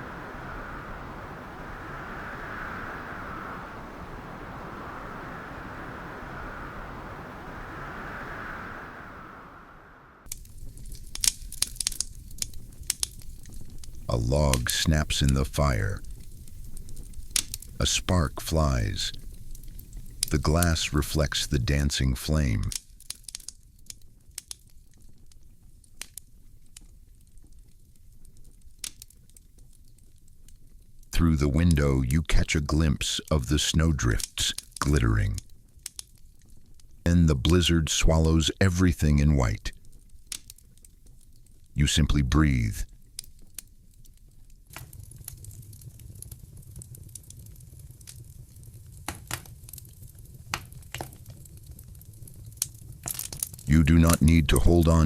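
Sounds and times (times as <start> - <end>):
wood fire crackling: 0.0 - 55.0.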